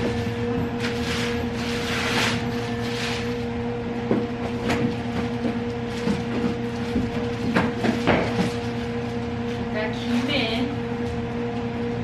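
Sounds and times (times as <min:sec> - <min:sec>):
packaging scraping and rustling: 0:00.0 - 0:03.6, 0:04.5 - 0:10.4.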